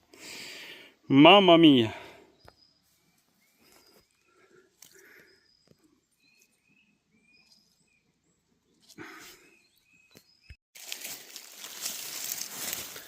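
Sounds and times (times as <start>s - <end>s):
bird chirping: 2.2s - 8.8s, 9.4s - 10.6s
rustling dry leaves: 10.8s - 13.0s.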